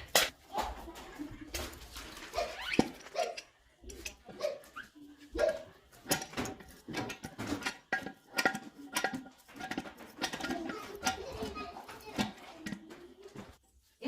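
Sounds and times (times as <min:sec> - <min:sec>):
hard objects clicking and clinking: 0:05.4 - 0:13.6.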